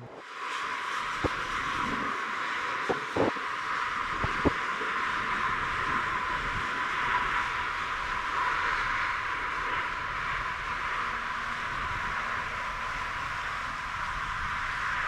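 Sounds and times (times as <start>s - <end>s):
jet engines rushing: 1.2s - 3.6s.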